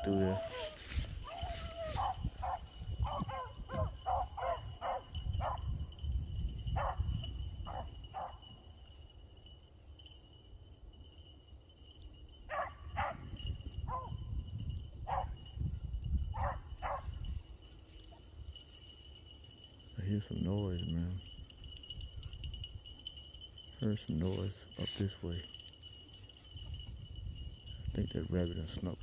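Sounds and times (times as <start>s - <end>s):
beagles baying: 0.0s - 5.7s, 6.8s - 8.5s, 12.5s - 14.2s, 15.0s - 15.4s, 16.4s - 17.2s.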